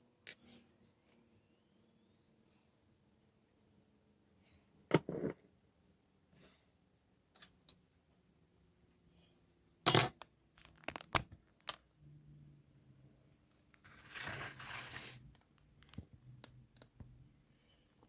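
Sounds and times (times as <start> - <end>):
scratchy rustling: 13.8 - 15.2.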